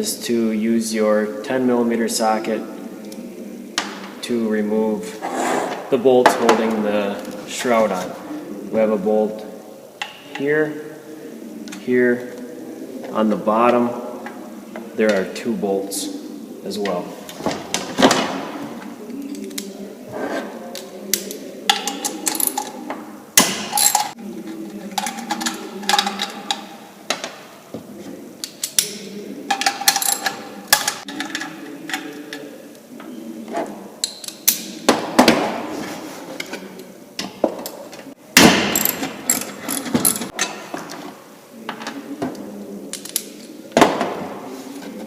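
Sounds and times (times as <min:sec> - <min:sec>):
metal tools clinking: 0:23.7 - 0:24.2, 0:29.5 - 0:30.4, 0:38.8 - 0:40.6.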